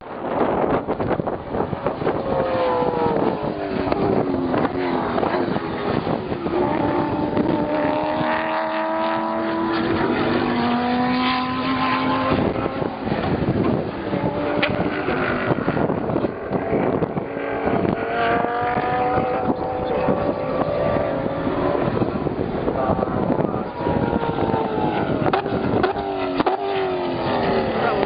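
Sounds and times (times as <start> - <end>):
race car engines at speed: 0.0 - 28.0.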